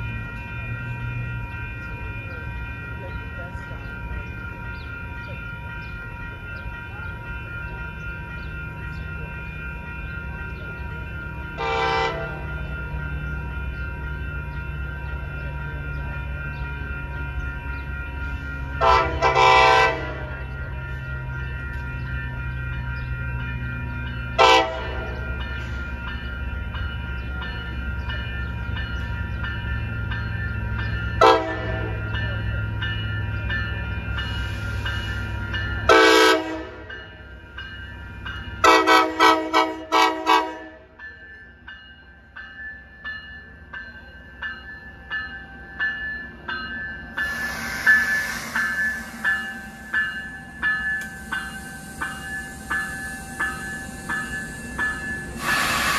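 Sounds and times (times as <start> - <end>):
locomotive rumbling: 0.0 - 55.9
train horn toots: 11.6 - 12.5, 18.8 - 20.4, 24.4 - 25.2, 31.2 - 32.0, 35.9 - 36.9, 38.6 - 41.0
bell dinging: 41.0 - 55.6
air hiss: 47.2 - 50.1, 51.0 - 55.9.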